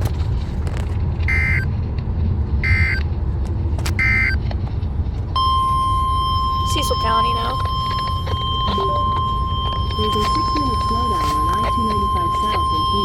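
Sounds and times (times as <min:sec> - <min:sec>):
low road noise rumble: 0:00.0 - 0:13.0
digital data tone bursts: 0:05.4 - 0:13.0.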